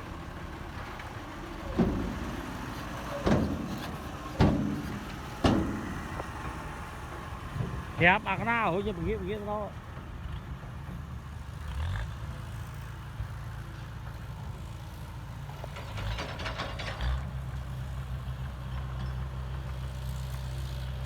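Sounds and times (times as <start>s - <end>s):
heavy diesel engine running: 0.0s - 21.0s
rapid metallic clatter: 1.7s - 6.6s.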